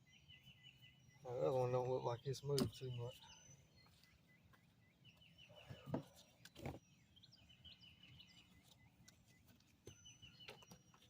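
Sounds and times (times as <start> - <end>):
small bird chirping: 0.0 - 11.0.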